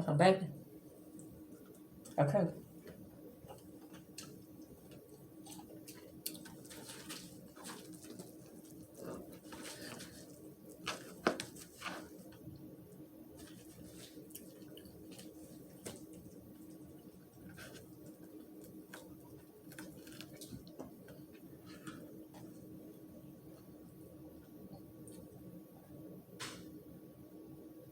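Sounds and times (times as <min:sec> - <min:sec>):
steady low hum: 0:00.0 - 0:27.9
chewing mouth sounds: 0:03.4 - 0:10.9, 0:13.4 - 0:21.2.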